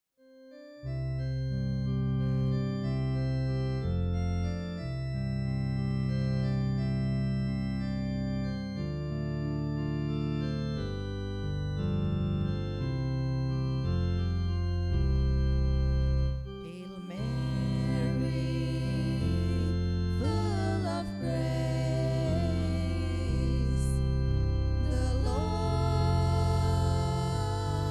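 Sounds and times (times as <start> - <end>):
organ playing hymn chords: 0.6 - 27.9
melody line with vibrato: 16.5 - 27.9.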